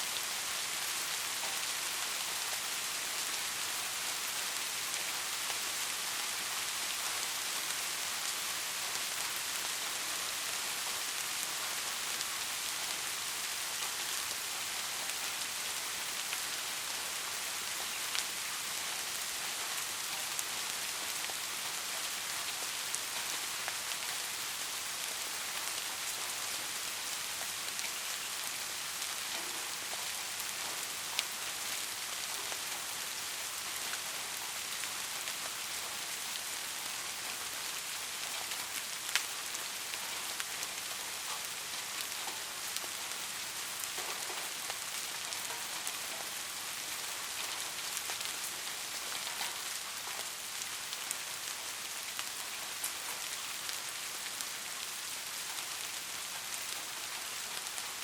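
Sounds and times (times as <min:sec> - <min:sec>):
soft rain: 0:00.0 - 0:58.0
rain drop ticks: 0:47.2 - 0:50.3.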